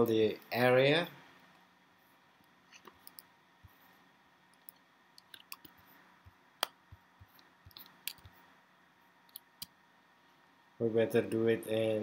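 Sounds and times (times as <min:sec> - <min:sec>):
computer mouse clicking: 0:02.7 - 0:03.8, 0:04.5 - 0:08.4, 0:09.3 - 0:09.8.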